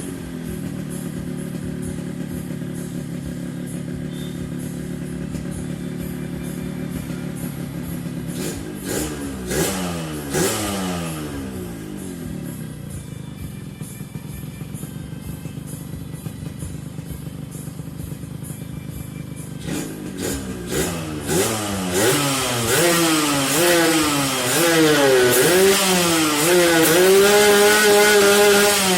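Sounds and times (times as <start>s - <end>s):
engine revving: 0.0s - 12.9s, 19.5s - 28.9s
motorcycle engine running: 0.0s - 28.9s.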